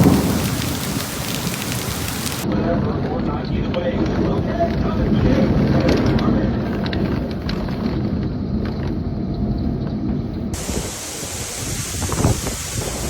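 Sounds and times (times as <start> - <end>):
heavy rain: 0.0 - 2.5, 10.6 - 13.0
thunder rumble: 0.0 - 13.0
wind: 0.0 - 13.0.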